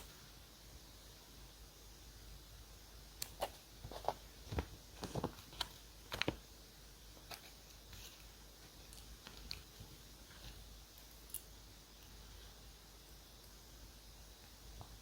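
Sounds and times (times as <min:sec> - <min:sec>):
paper rustling: 0:03.8 - 0:06.4.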